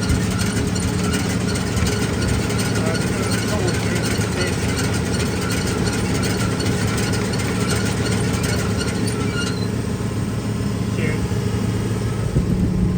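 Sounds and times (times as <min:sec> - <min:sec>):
fast mechanical rattle: 0:00.0 - 0:09.8
tractor engine running: 0:00.0 - 0:12.9.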